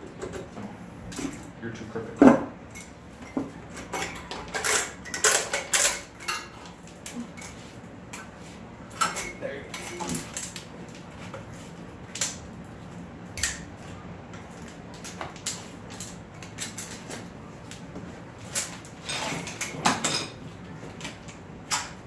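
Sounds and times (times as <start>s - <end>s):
metal parts clanking: 3.8s - 6.4s, 18.6s - 20.4s.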